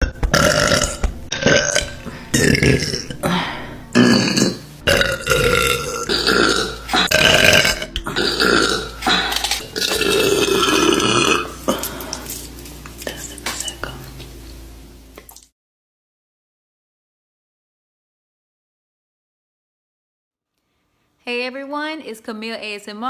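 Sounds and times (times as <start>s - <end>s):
woman burping: 0.0s - 12.0s.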